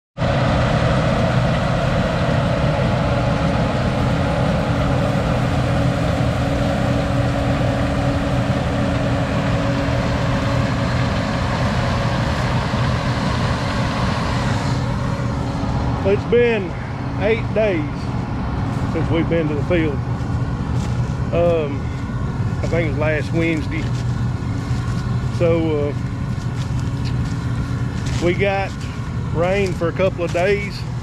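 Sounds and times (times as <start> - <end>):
heavy diesel engine droning: 0.2 - 31.0.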